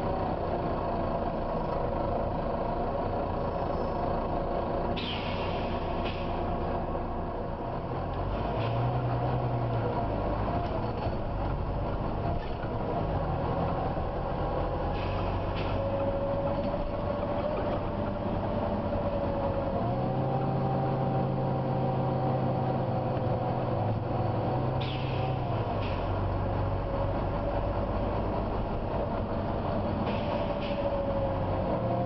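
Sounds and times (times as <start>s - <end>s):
bus engine low hum: 0.0s - 32.0s
brief air hisses: 5.0s - 6.4s.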